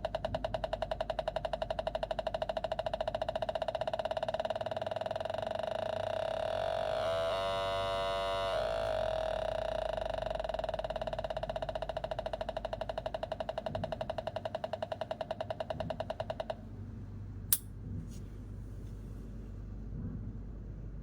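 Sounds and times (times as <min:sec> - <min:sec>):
pulsing buzzy electronic tone: 0:05.7 - 0:11.4.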